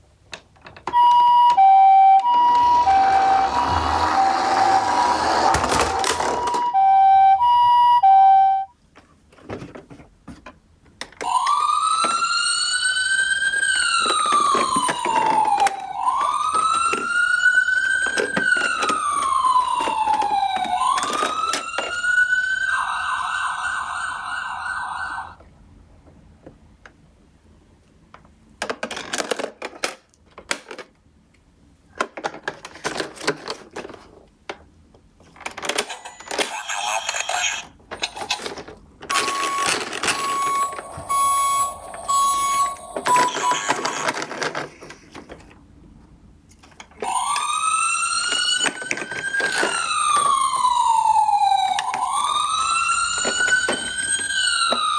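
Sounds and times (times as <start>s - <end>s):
toy electronic siren: 0.9s - 8.7s, 11.2s - 25.4s, 35.7s - 44.6s, 47.0s - 54.9s.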